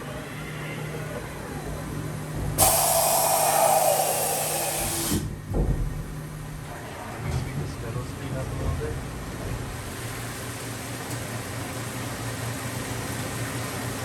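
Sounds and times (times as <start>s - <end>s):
loud rushing hiss: 2.6s - 5.3s.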